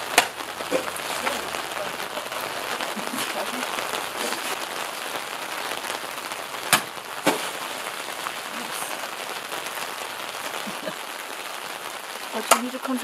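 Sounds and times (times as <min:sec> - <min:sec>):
steady rain falling: 0:00.0 - 0:13.0
sword cutting plastic jugs: 0:06.7 - 0:07.6.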